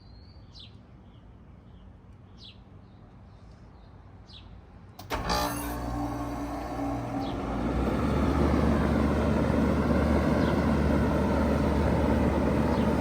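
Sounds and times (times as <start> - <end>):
heat pump fan rushing: 5.0 - 13.0.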